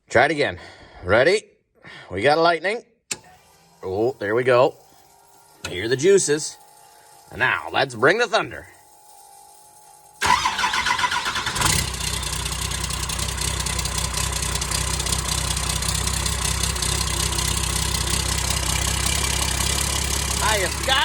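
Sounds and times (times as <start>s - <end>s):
diesel engine cranking and idling: 10.2s - 21.0s.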